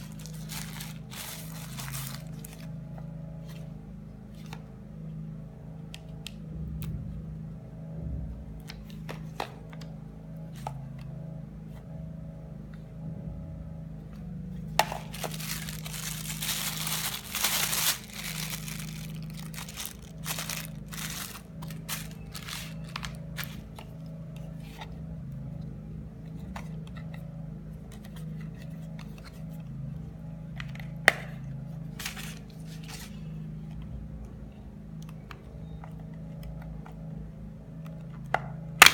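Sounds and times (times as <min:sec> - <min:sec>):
packaging rustling and tearing: 0:00.0 - 0:02.7, 0:14.9 - 0:23.8
packaging clicks and crinkling: 0:00.0 - 0:02.8, 0:14.8 - 0:24.1
low hum: 0:00.0 - 0:38.8.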